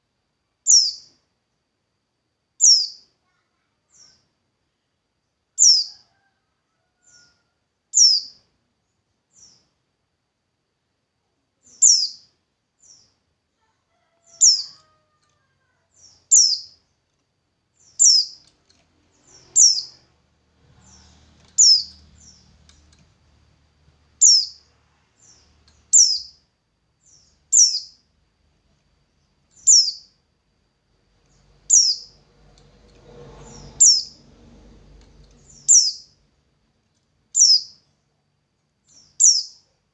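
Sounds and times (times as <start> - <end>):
songbird chirping: 0.6 - 1.6, 2.6 - 9.9, 11.5 - 30.3, 30.9 - 39.9.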